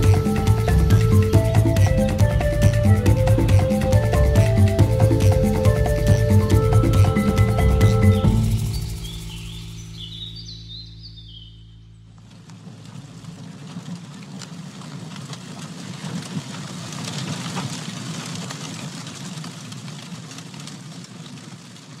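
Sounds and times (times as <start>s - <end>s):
campfire crackling and popping: 0.0s - 10.2s, 12.0s - 22.0s.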